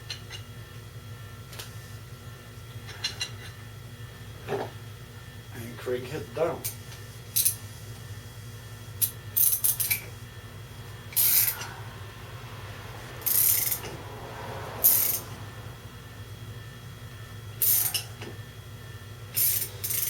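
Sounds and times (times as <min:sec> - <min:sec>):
metallic clicks of chain tool: 0:19.4 - 0:20.0.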